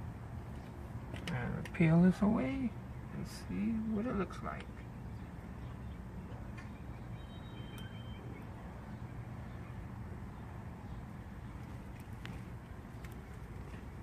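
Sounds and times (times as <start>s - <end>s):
faint high-pitched tone: 7.1s - 8.5s.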